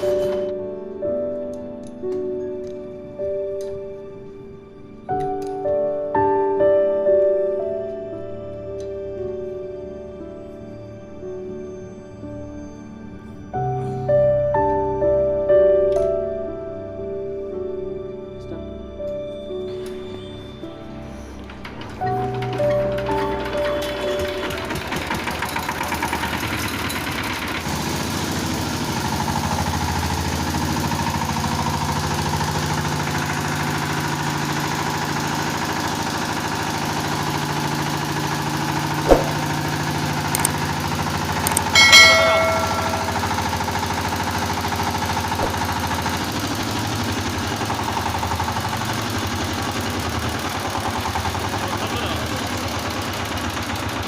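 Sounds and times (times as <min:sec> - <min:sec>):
diesel engine idling: 0:21.6 - 0:54.0
sharp click: 0:39.1 - 0:39.6
short metallic ring: 0:41.6 - 0:43.8.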